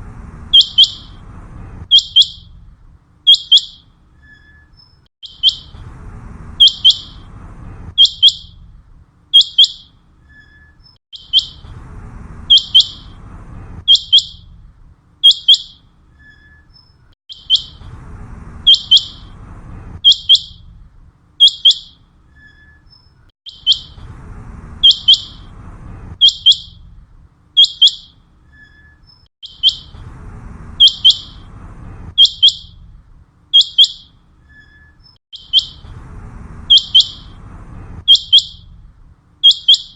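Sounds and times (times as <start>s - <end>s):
low background rumble: 0.0s - 39.5s
quail calling: 0.6s - 1.2s, 5.2s - 5.7s, 12.5s - 13.1s, 18.7s - 19.3s, 23.5s - 24.0s, 24.8s - 25.5s, 29.4s - 29.9s, 30.8s - 31.4s, 33.6s - 34.1s, 35.4s - 35.8s, 36.7s - 37.4s, 38.1s - 38.6s, 39.4s - 39.9s.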